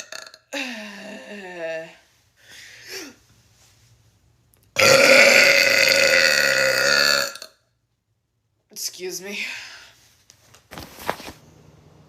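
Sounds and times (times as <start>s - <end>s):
person burping: 0.0s - 1.4s, 4.8s - 7.6s.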